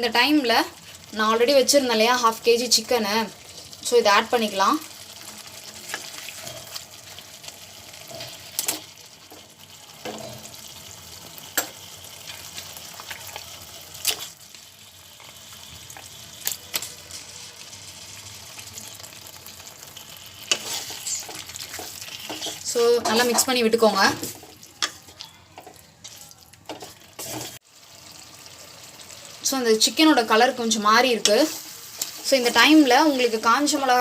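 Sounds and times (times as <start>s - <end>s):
chicken sizzling in oil: 0.0s - 34.0s.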